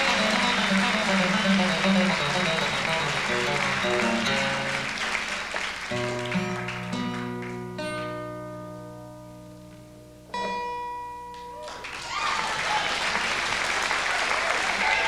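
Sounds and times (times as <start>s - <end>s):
plucked string instrument: 0.0s - 11.6s.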